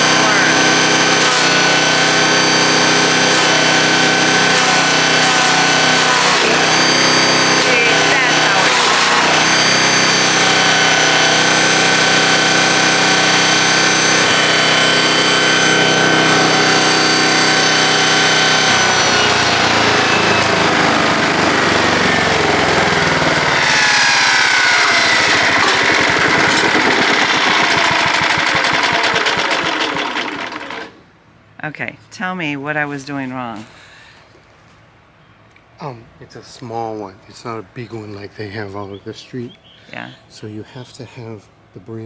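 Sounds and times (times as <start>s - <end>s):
wood chipper engine running: 0.0s - 31.0s.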